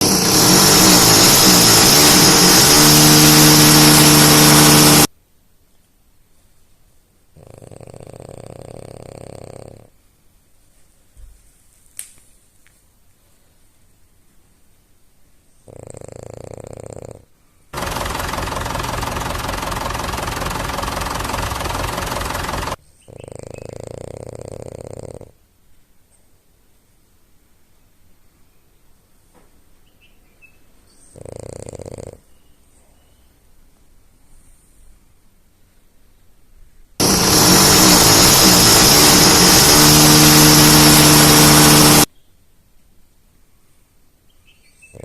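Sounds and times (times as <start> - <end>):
tractor engine running: 0.0 - 5.1, 17.8 - 22.8, 37.0 - 42.1
dog snoring: 7.4 - 9.9, 15.6 - 17.3, 23.1 - 25.4, 31.0 - 32.3.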